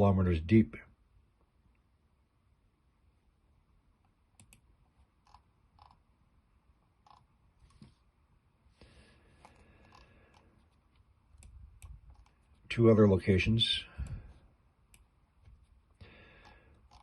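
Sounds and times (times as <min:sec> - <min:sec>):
faint computer clicks: 0:04.4 - 0:06.0.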